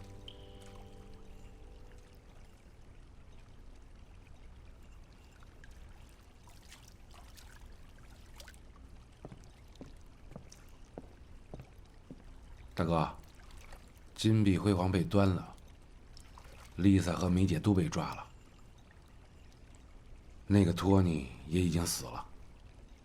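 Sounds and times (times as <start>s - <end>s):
music: 0.0s - 2.3s
water rushing: 0.0s - 22.6s.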